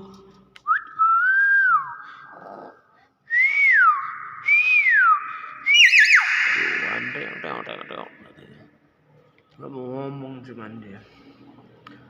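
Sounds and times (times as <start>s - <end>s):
myna bird whistling: 3.4s - 8.2s.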